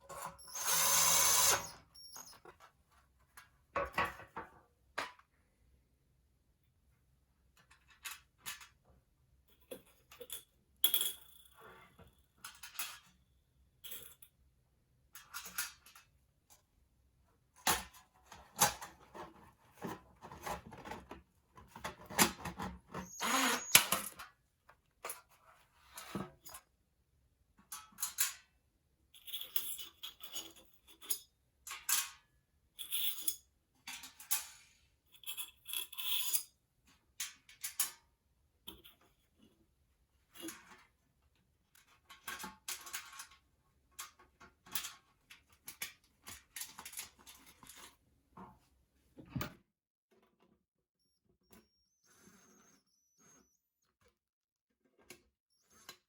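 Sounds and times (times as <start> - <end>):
metal parts clicking and clinking: 29.2 - 32.2, 41.8 - 43.4.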